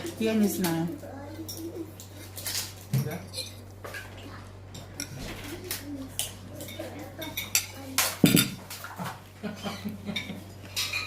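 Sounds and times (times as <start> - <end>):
hard objects clinking and clattering: 6.6 - 9.2.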